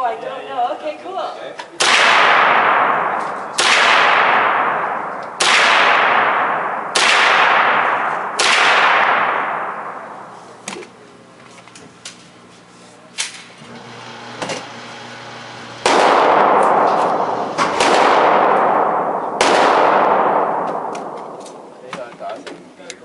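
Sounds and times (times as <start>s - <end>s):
gunshots echoing indoors: 1.8s - 10.7s, 15.6s - 22.0s.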